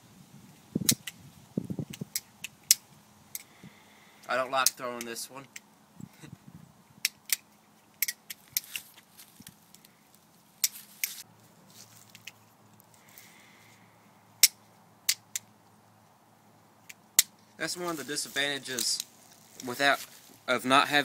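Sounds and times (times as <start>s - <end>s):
butterfly knife metal clicks: 0.9s - 1.2s, 7.0s - 8.8s.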